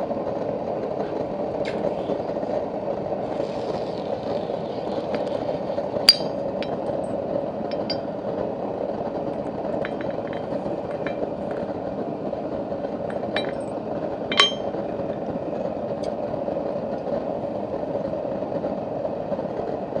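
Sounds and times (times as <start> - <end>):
metal tools clinking: 6.1 - 6.8, 7.7 - 8.1, 13.1 - 13.7, 14.3 - 14.8.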